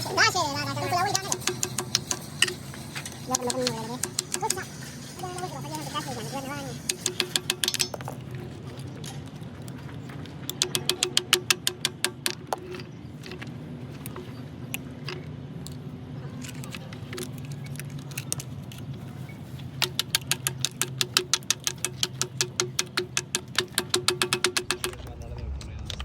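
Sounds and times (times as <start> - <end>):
low machine hum: 0.0 - 26.0
rapid metallic tapping: 0.8 - 8.2, 10.5 - 12.6, 19.8 - 25.2.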